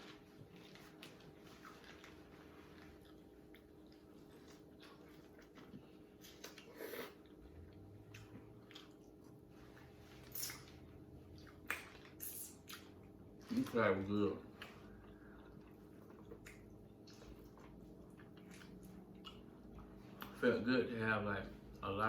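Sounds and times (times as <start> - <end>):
faint chewing and eating: 0.0 - 22.0
low steady hum: 0.0 - 22.0.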